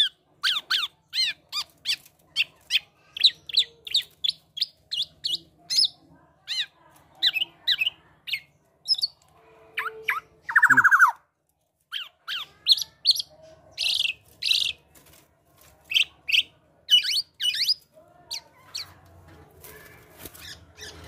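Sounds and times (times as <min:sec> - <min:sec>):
bird singing whistled notes: 0:10.5 - 0:11.2.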